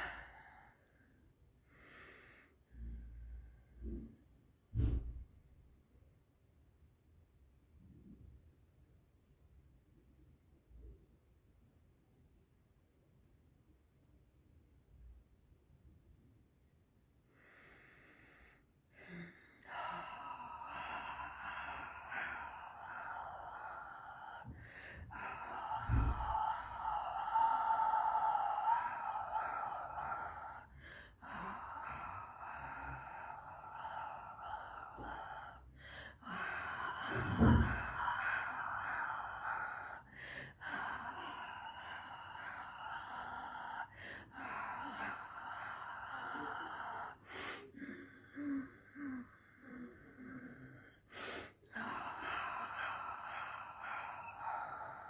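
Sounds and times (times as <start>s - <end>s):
person breathing loudly: 0.0s - 4.2s, 17.3s - 55.0s.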